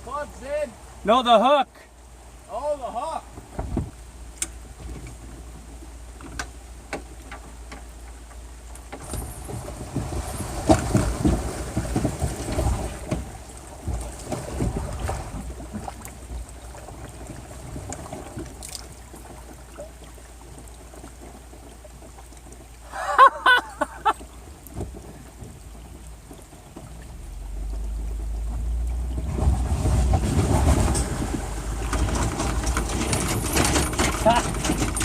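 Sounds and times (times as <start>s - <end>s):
wind rumbling on microphone: 3.2s - 35.0s
bumping and rustling: 3.4s - 4.0s, 4.8s - 19.7s, 24.2s - 35.0s
knocks and clicks: 29.4s - 35.0s.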